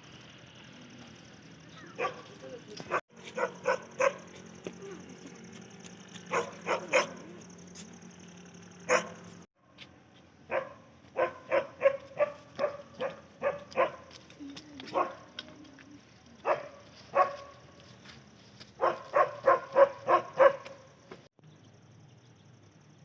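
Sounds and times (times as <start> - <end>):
dog barking: 1.8 - 4.4, 6.3 - 7.5, 8.9 - 9.3, 10.5 - 14.1, 14.9 - 15.3, 16.4 - 17.6, 18.8 - 20.9.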